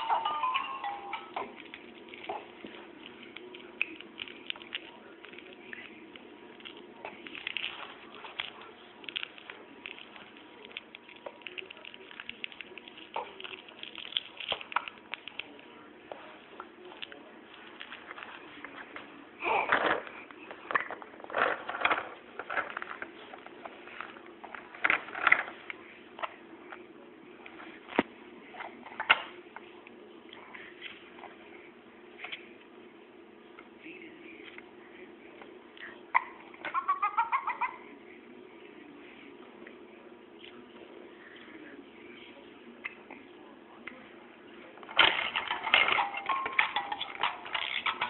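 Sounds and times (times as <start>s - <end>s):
plastic toys clicking and rattling: 19.6s - 25.6s, 44.9s - 48.0s.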